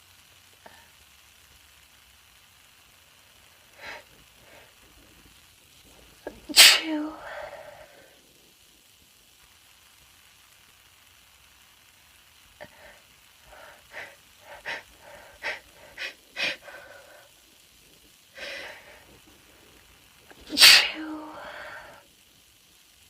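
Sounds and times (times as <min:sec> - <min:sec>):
woman sniffing and breathing: 0:03.7 - 0:04.8, 0:12.6 - 0:17.4, 0:18.4 - 0:19.3.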